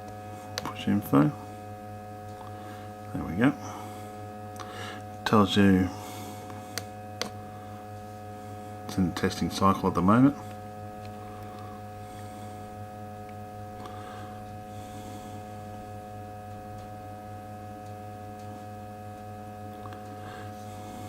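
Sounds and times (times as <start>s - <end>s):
electrical hum: 0.0s - 21.0s
soft handling noises: 10.3s - 12.5s.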